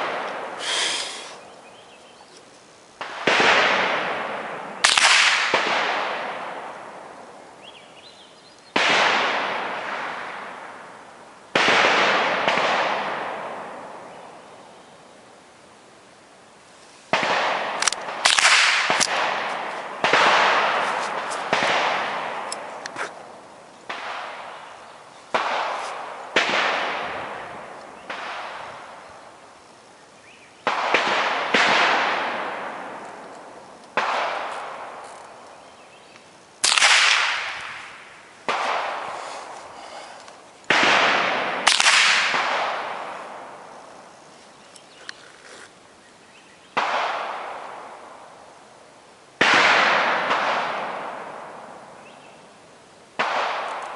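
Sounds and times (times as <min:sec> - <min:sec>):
rifle shots echoing: 0:00.0 - 0:01.0, 0:03.0 - 0:07.2, 0:08.7 - 0:14.3, 0:17.1 - 0:29.4, 0:30.6 - 0:35.4, 0:36.6 - 0:39.8, 0:40.6 - 0:44.0, 0:46.8 - 0:48.4, 0:49.4 - 0:52.1, 0:53.2 - 0:53.9.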